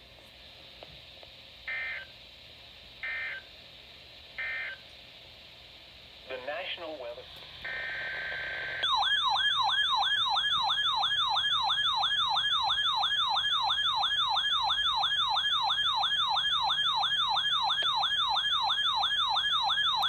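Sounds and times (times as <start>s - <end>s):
warbling electronic alert siren: 1.7s - 2.1s, 3.0s - 3.4s, 4.4s - 4.8s, 7.6s - 20.0s.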